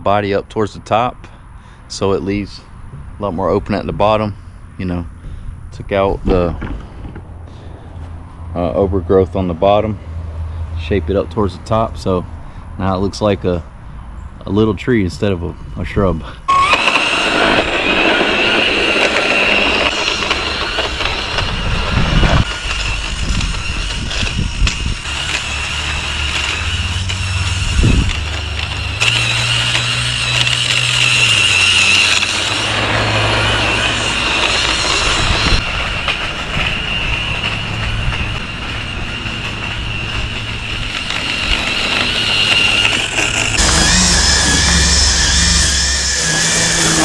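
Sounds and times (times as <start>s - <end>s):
motor whining and humming: 16.5s - 47.0s.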